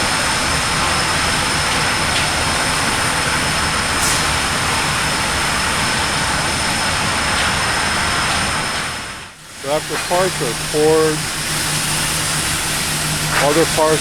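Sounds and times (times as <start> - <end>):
machinery rushing noise: 9.5 - 14.0.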